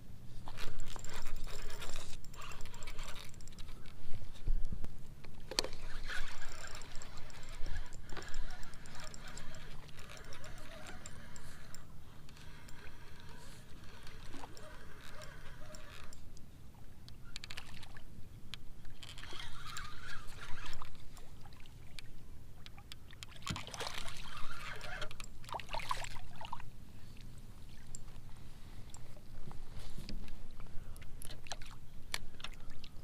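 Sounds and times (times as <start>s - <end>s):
water sloshing against kayak: 18.9s - 33.0s.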